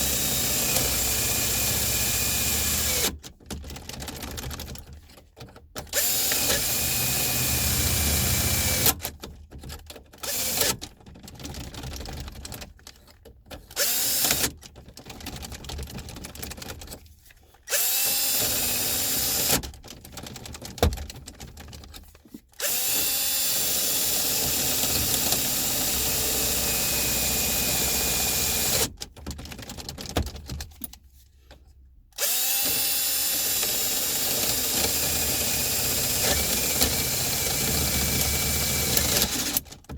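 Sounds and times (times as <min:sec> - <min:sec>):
power drill drilling: 0:00.0 - 0:03.2, 0:05.9 - 0:09.0, 0:10.2 - 0:10.8, 0:13.8 - 0:14.5, 0:17.7 - 0:19.6, 0:22.6 - 0:28.9, 0:32.2 - 0:39.6
clicks and rattles: 0:02.6 - 0:06.5, 0:08.6 - 0:17.6, 0:19.5 - 0:22.6, 0:28.6 - 0:31.7.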